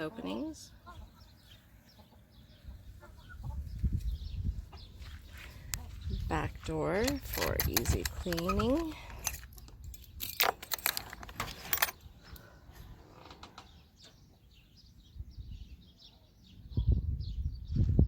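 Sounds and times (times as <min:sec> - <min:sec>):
metallic clicking and rattling: 0:06.6 - 0:12.1.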